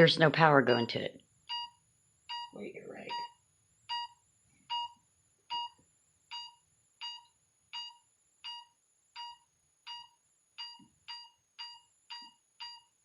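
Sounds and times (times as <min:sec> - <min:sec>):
meter short electronic beeps: 0:02.3 - 0:03.3.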